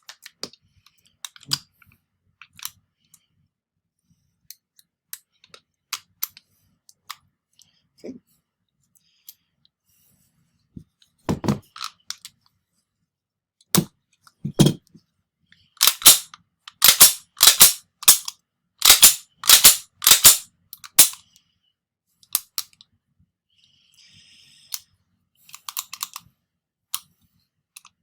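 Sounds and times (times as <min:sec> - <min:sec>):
sharp sliding clacks: 0:15.8 - 0:20.4, 0:21.0 - 0:21.2
pistol parts clicking: 0:15.8 - 0:21.2, 0:25.5 - 0:26.3.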